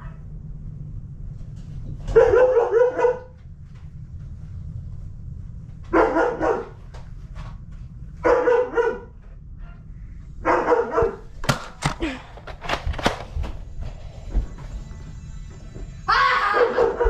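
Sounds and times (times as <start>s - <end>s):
dog barking: 2.0s - 3.4s, 5.9s - 6.8s, 8.2s - 9.8s, 10.4s - 11.2s.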